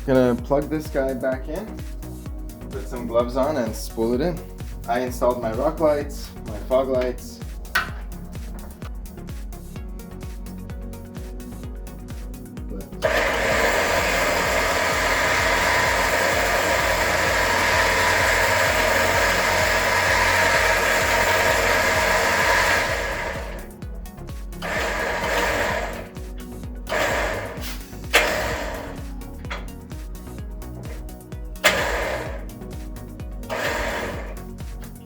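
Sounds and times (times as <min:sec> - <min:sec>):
electric winch motor whine: 0:13.0 - 0:23.7, 0:24.6 - 0:31.0, 0:31.6 - 0:32.7, 0:33.4 - 0:34.6.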